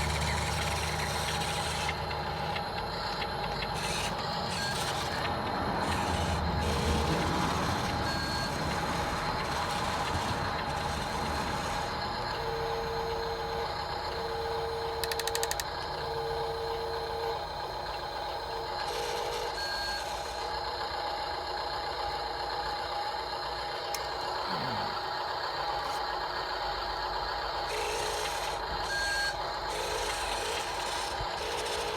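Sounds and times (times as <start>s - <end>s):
mechanical running noise: 0.0s - 31.9s
vehicle reversing alarm beeps: 0.1s - 21.0s, 27.7s - 31.9s.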